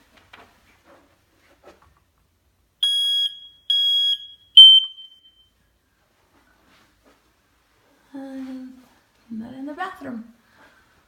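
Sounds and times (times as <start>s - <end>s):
smoke detector beeping: 2.8s - 5.5s.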